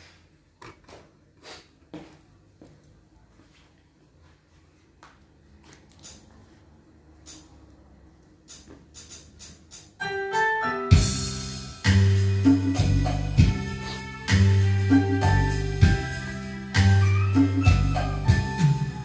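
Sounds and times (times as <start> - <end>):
backing music with heavy bass: 8.5 - 19.0
electronic keyboard melody: 10.0 - 19.0.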